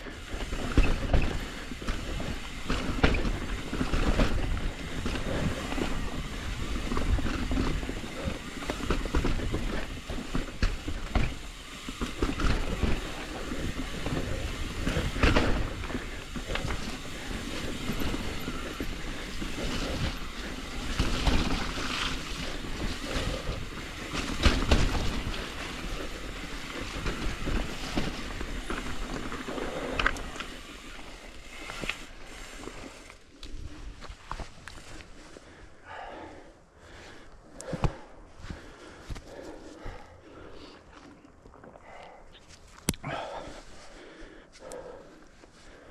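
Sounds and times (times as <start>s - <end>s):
tyres rolling over dirt and rocks: 0.0s - 35.6s
bike rattling: 0.0s - 45.9s.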